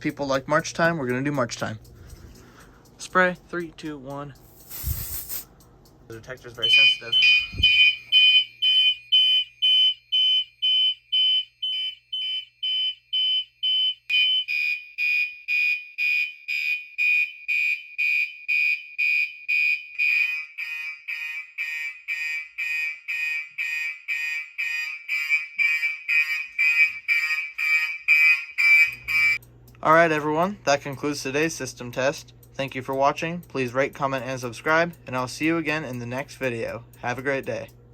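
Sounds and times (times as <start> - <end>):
fire alarm horns pulsing: 5.7 - 29.6.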